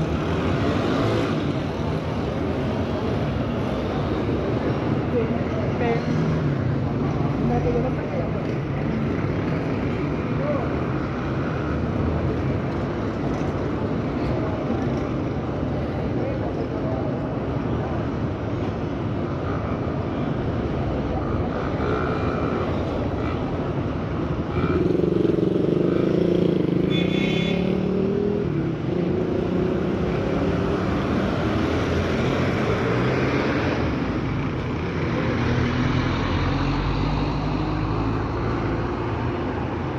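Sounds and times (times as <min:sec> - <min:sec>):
passing cars and motorcycles: 0:00.0 - 0:39.9.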